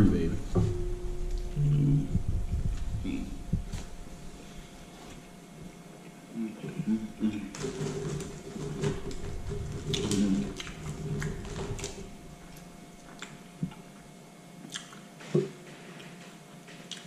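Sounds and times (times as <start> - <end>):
chewing with mouth clicks: 9.9 - 11.9, 12.6 - 13.9, 14.6 - 15.1, 16.8 - 17.0
lip smacks: 14.6 - 15.1.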